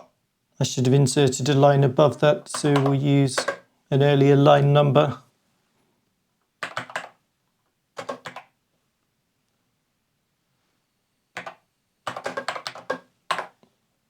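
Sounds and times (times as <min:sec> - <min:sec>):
keyboard keys clicking: 0:02.5 - 0:03.6, 0:06.6 - 0:07.2, 0:08.0 - 0:08.5, 0:11.4 - 0:13.6.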